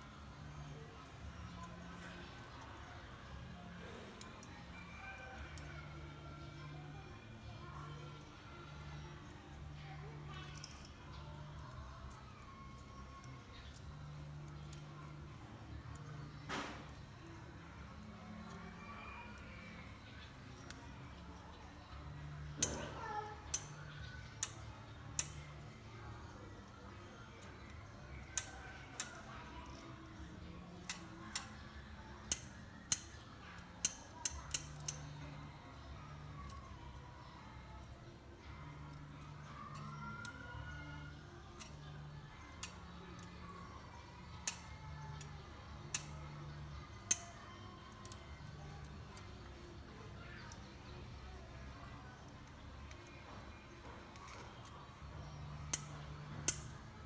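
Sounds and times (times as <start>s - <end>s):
faint low hum: 0.0s - 57.0s
small hard parts clicking: 10.3s - 21.7s, 22.3s - 35.4s, 38.8s - 43.5s, 44.4s - 49.7s, 51.3s - 56.9s
sharp clicks: 23.5s - 23.8s, 24.4s - 24.6s, 25.2s - 25.5s, 28.2s - 29.2s, 30.9s - 31.6s, 32.3s - 33.2s, 33.8s - 35.1s, 44.4s - 45.3s, 45.9s - 46.2s, 47.1s - 47.4s, 55.7s - 56.8s.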